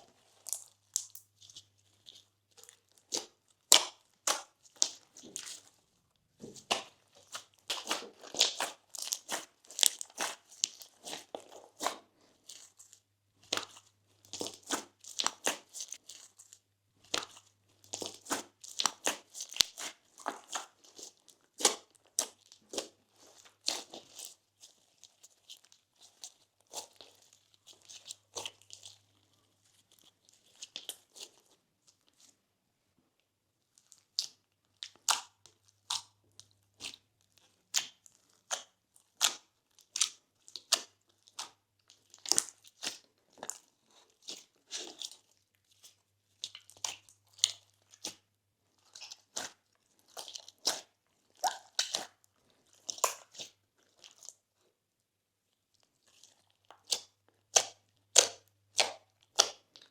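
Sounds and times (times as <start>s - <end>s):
slime squished by hand: 0.1s - 5.7s, 6.5s - 29.0s, 48.8s - 54.4s, 56.0s - 59.9s.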